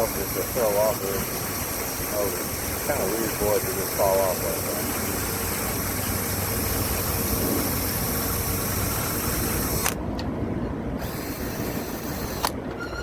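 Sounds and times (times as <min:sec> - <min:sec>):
high whine: 0:00.0 - 0:10.0
hvac equipment humming: 0:00.0 - 0:13.0.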